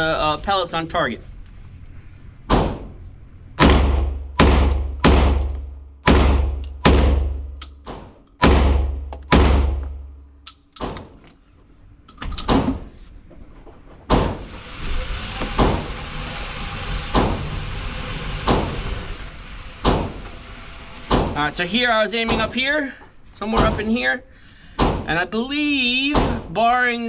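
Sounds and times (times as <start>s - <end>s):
loud shotgun shots: 3.6s - 5.5s, 6.1s - 7.4s, 8.4s - 9.8s
steady rushing noise: 14.4s - 22.1s.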